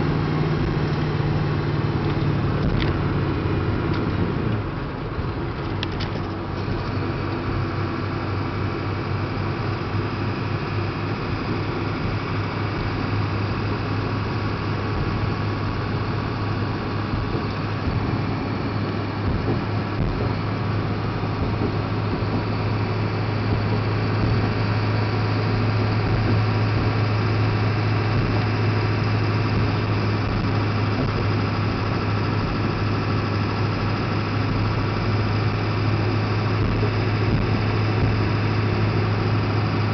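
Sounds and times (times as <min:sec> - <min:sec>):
diesel truck engine droning: 0:00.0 - 0:39.9.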